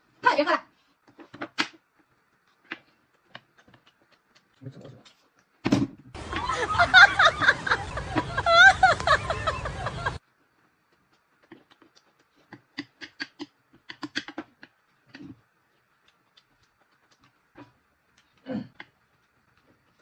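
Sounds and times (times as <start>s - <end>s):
eating clicks and taps: 11.1s - 15.3s.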